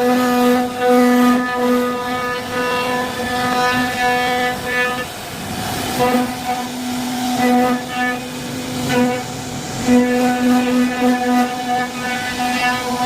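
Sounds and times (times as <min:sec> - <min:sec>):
router spindle whining: 0:00.0 - 0:13.0
bit carving wood: 0:10.0 - 0:13.0.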